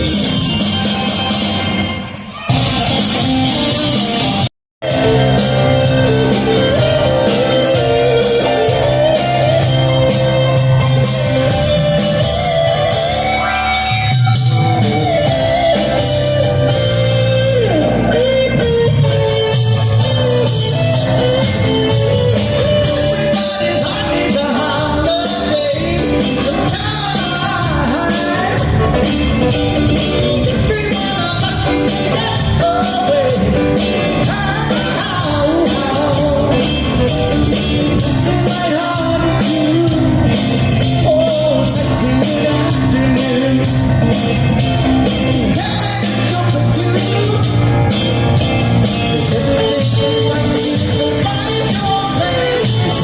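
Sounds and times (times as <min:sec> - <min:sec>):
electric guitar: 0:00.0 - 0:53.0
live rock band: 0:00.0 - 0:53.0
lead vocal singing: 0:22.8 - 0:29.2, 0:30.3 - 0:37.1, 0:38.0 - 0:44.4, 0:45.3 - 0:48.0, 0:48.9 - 0:53.0.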